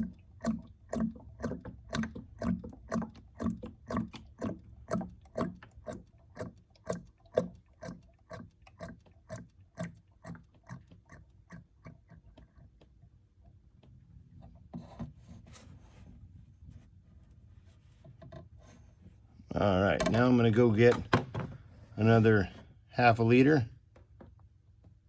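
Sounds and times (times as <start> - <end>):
oil glugging out of a plastic jug: 0.0 - 13.0
rustle of handling: 15.0 - 19.4.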